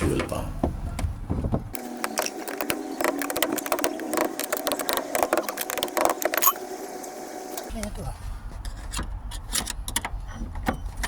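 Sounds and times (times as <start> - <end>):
hand tools clicking and rattling: 2.0 - 6.6.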